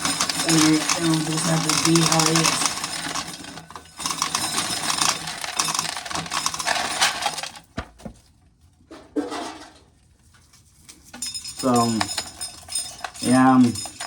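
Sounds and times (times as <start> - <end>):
corn kernels rattling into a pail: 0.0 - 7.7.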